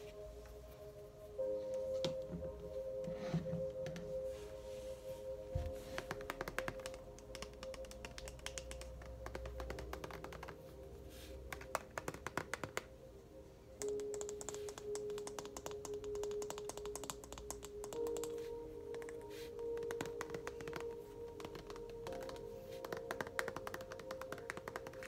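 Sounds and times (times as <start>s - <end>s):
soft ambient music: 0.0s - 25.0s.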